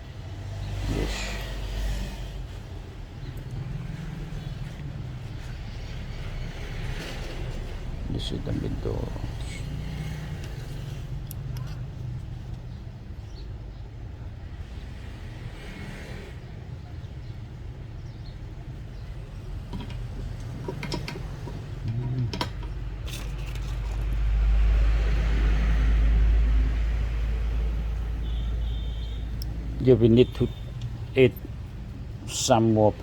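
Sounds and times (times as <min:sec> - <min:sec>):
low background hum: 0:17.5 - 0:24.7.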